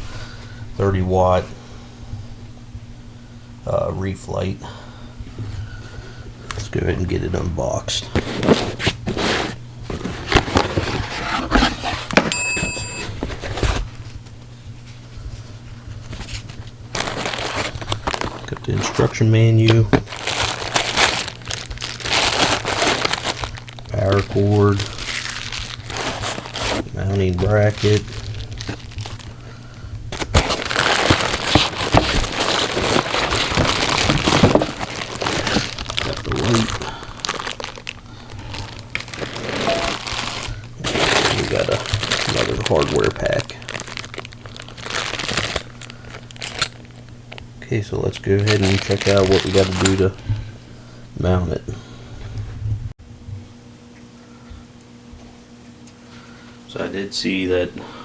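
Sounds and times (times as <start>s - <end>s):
plastic packaging crinkling: 7.9s - 14.1s, 16.0s - 50.3s
cardboard box scrapes and rustles: 8.1s - 14.0s, 16.0s - 19.2s, 19.9s - 29.4s, 30.1s - 38.0s, 38.6s - 45.7s
high ringing tone: 12.3s - 13.3s
handling clicks and knocks: 30.1s - 38.0s, 38.9s - 47.2s, 48.2s - 50.1s.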